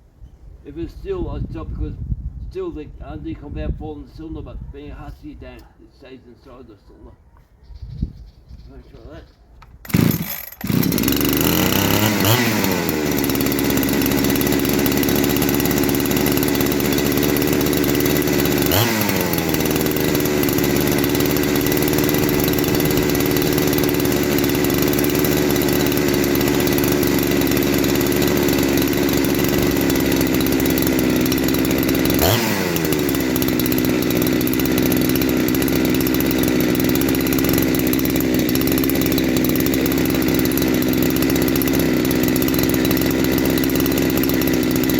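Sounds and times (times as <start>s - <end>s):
chainsaw idling and revving: 9.8s - 44.9s.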